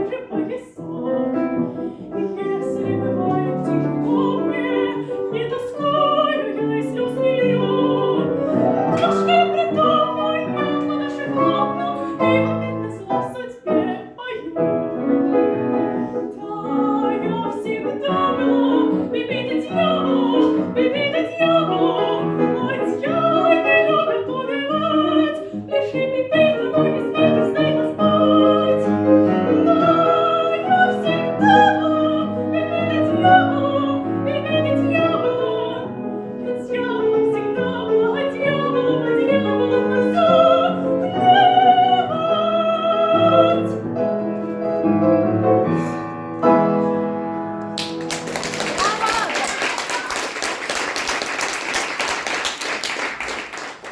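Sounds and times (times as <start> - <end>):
girl singing with vibrato: 2.0 - 14.7.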